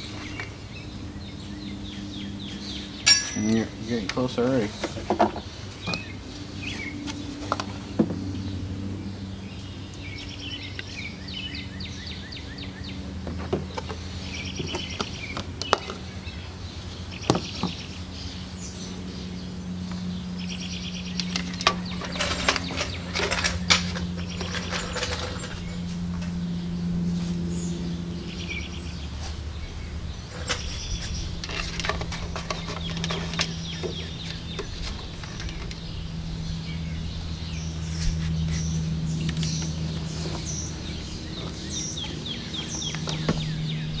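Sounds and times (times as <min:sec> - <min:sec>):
songbirds chirping: 0:00.0 - 0:44.0
steady low hum: 0:00.0 - 0:44.0
handling clicks and knocks: 0:21.2 - 0:25.7, 0:30.4 - 0:35.9.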